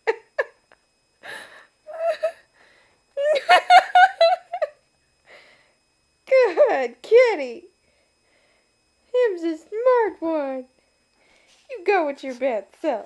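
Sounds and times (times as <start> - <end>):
person laughing breathily: 1.2 - 2.5
wheezy gasp of breath: 1.2 - 3.0, 5.3 - 5.8.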